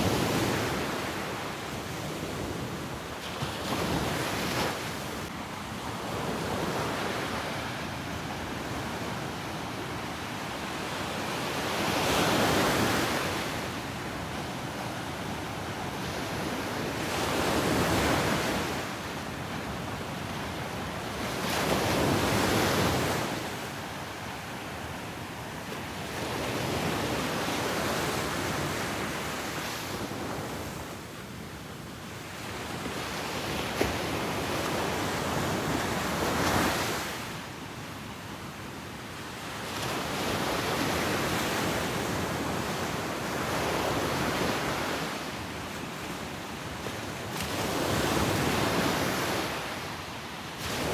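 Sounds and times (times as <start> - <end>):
ocean waves breaking on beach: 39.1 - 50.9.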